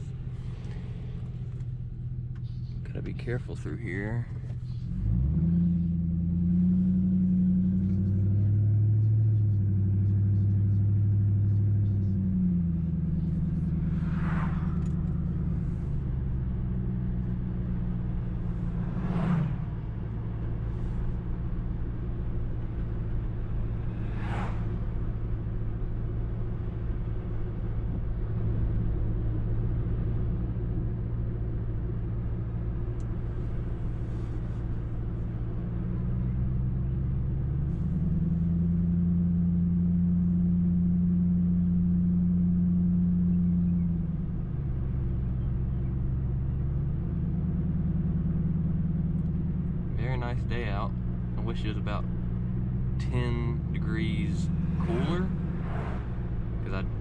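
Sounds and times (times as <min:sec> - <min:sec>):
car engine deep rumble: 0:00.0 - 0:57.0
brief whooshes passing: 0:13.8 - 0:16.0, 0:23.6 - 0:25.3, 0:54.5 - 0:57.0.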